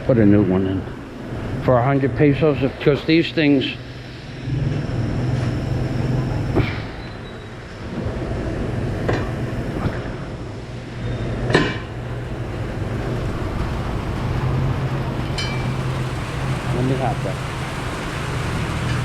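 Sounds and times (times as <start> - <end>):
machinery humming: 2.6 - 6.9, 11.9 - 19.0.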